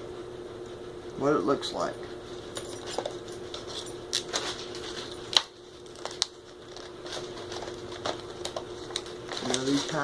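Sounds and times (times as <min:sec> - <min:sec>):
plastic packaging crinkling: 0:04.1 - 0:10.0.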